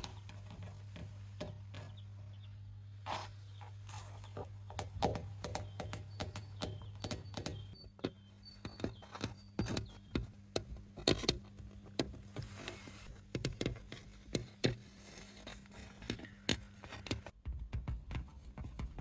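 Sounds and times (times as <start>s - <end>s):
taps and scrapes of handled object: 4.3s - 19.0s.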